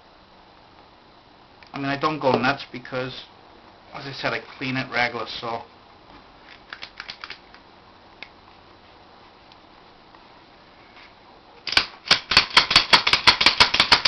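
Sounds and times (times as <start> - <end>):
pistol action clicking: 6.6 - 7.5.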